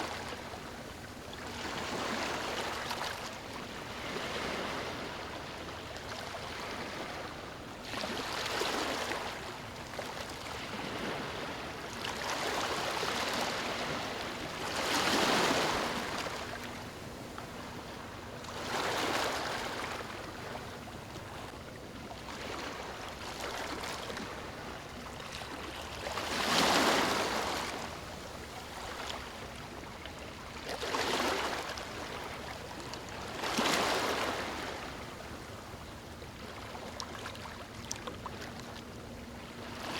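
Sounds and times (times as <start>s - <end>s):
waves breaking on sandy beach: 10.4s - 16.8s.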